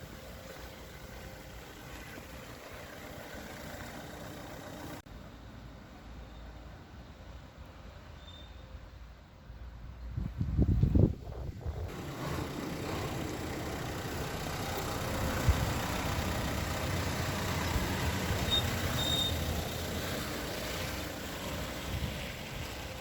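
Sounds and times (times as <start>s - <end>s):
van engine and road noise: 0.0s - 23.0s
faint high-pitched squeak: 8.1s - 8.8s.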